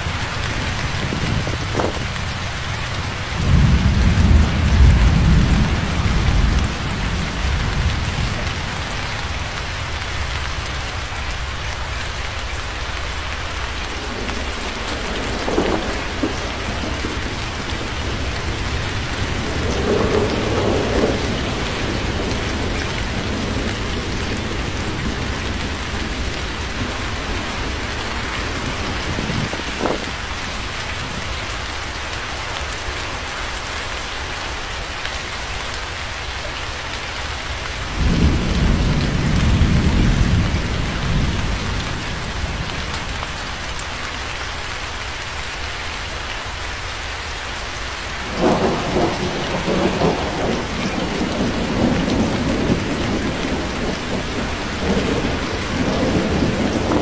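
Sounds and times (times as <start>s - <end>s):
thunder rumbling: 0.0s - 31.7s, 37.8s - 43.7s, 48.0s - 57.0s
heavy rain falling: 0.0s - 57.0s.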